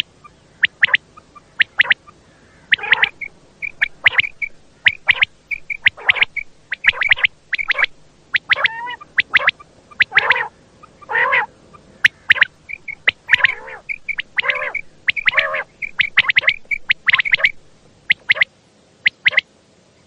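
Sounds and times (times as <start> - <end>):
quail throaty nasal calls: 0.0 - 19.4
quail whistled calls: 0.0 - 19.5.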